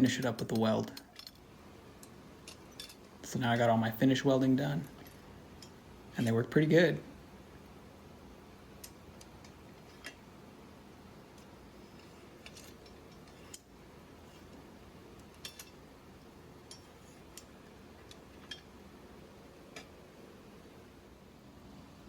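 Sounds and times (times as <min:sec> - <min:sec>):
low steady background hum: 0:00.0 - 0:22.0
metallic clicks of clamps: 0:00.1 - 0:01.4, 0:02.0 - 0:03.1, 0:11.4 - 0:14.6, 0:15.2 - 0:15.9, 0:16.6 - 0:18.8.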